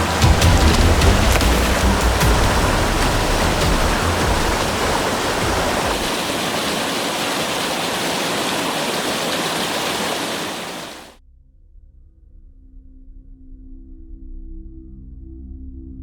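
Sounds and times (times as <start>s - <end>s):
low rumble: 0.0s - 6.1s
loud rush of water: 0.0s - 11.2s.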